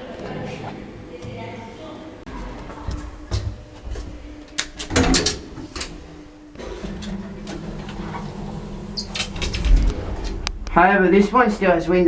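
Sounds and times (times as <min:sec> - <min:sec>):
lift machinery low hum: 0:02.4 - 0:12.0.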